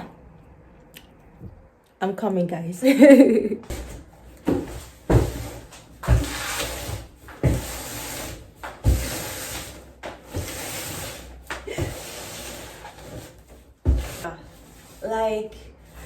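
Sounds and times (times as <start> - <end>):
cardboard rubbing and scraping: 3.7 - 16.0.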